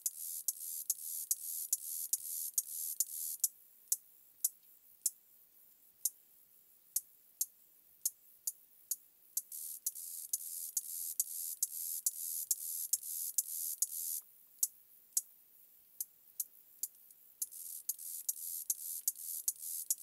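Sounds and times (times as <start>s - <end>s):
beetle clicking: 0.0s - 3.5s, 8.9s - 15.3s, 16.0s - 20.0s
hissy buzz: 16.8s - 20.0s.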